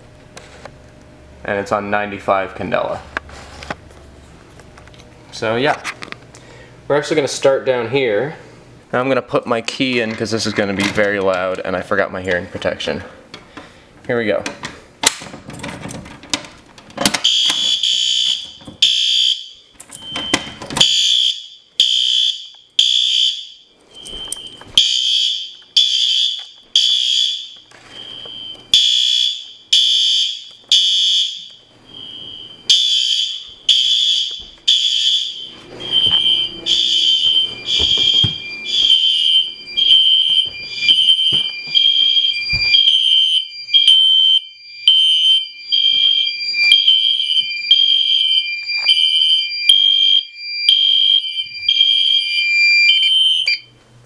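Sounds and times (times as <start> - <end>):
fire alarm horns beeping: 17.0 - 53.8.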